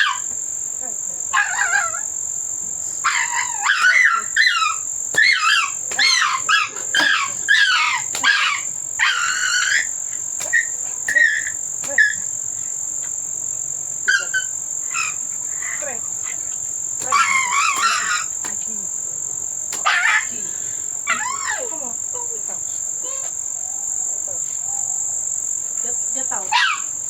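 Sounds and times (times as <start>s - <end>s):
high insect drone: 0.0s - 27.0s
dog whimpering: 1.4s - 2.0s, 21.1s - 21.8s.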